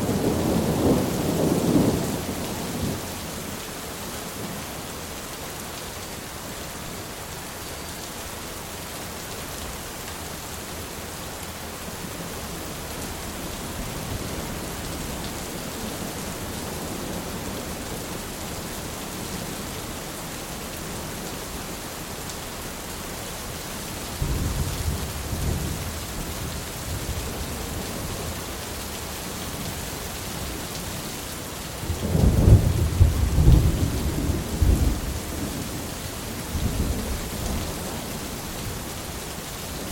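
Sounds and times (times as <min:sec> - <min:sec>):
steady rain falling: 0:00.0 - 0:39.9
thunder rumbling: 0:31.8 - 0:35.9.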